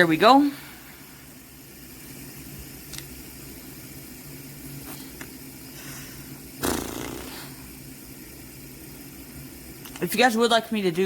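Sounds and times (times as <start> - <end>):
fidget spinners whirring: 0.0 - 11.0.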